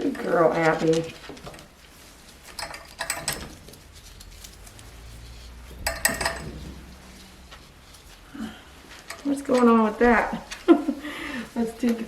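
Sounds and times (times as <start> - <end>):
metallic clinking and jingling: 5.8 - 6.6.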